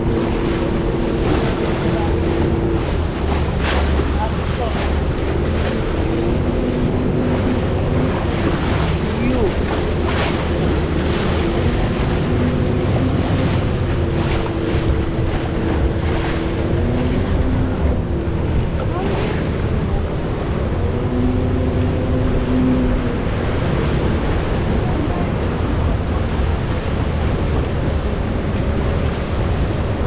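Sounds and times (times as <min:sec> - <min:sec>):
waterfall roaring: 0:00.0 - 0:30.0
wind buffeting microphone: 0:00.0 - 0:30.0.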